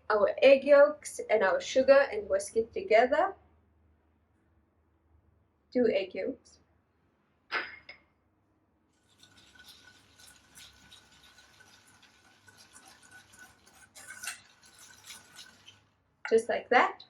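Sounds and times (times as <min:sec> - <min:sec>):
whisk scraping and tapping bowl: 0:09.0 - 0:15.9.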